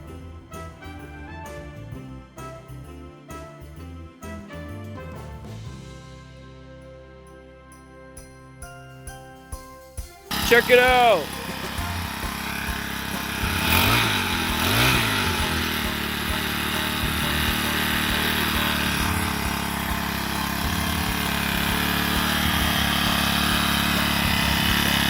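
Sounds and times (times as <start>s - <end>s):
lawn mower engine revving: 10.3s - 25.0s.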